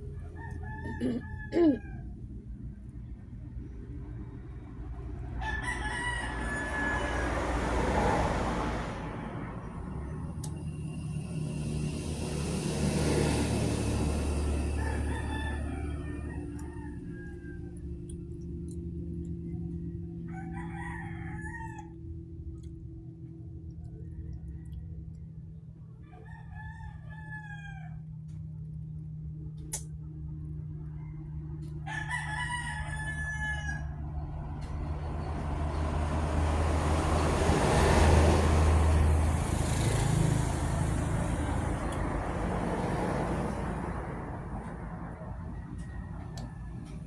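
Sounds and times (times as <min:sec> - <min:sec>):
rooster crowing: 0:00.0 - 0:02.2, 0:05.2 - 0:09.7, 0:11.5 - 0:18.7, 0:19.4 - 0:22.2, 0:23.8 - 0:28.2, 0:30.7 - 0:35.4, 0:36.0 - 0:47.0
steady low hum: 0:00.0 - 0:06.5.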